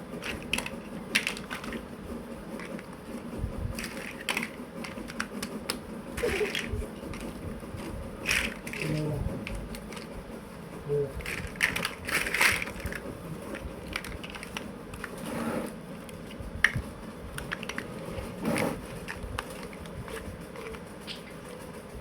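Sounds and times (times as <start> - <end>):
plastic building blocks clicking: 0.2 - 1.9, 3.8 - 10.1, 11.2 - 15.2, 17.4 - 18.0.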